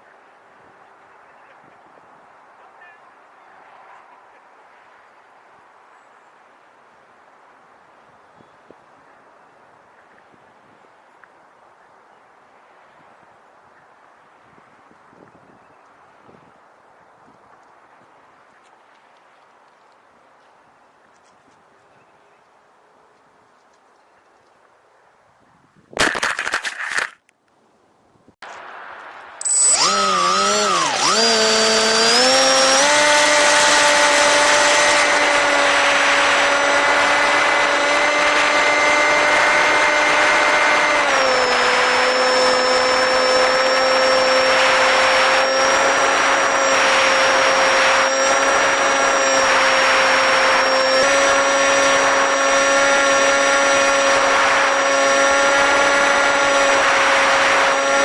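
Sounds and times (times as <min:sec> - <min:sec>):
model plane motor whine: 0:29.4 - 0:58.0.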